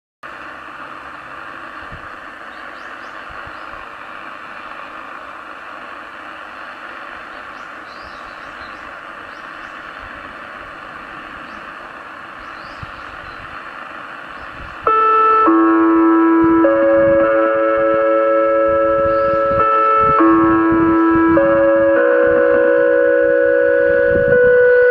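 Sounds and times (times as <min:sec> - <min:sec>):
outdoor background hiss: 0:00.2 - 0:24.9
loudspeaker bell-like chime: 0:14.9 - 0:24.9.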